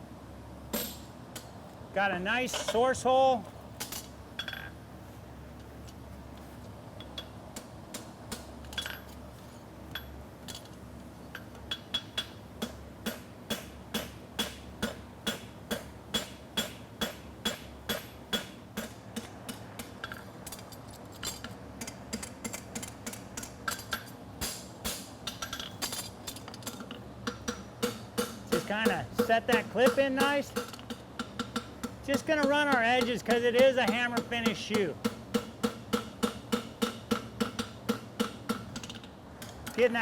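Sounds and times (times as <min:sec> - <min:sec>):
cooler fan buzz: 0:00.0 - 0:40.0
hammer striking horseshoe on anvil: 0:11.4 - 0:20.2, 0:26.6 - 0:39.8.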